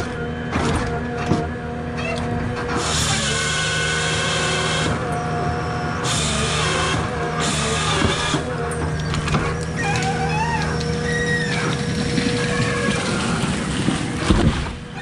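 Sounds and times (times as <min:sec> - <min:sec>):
diesel engine running: 0:00.0 - 0:15.0.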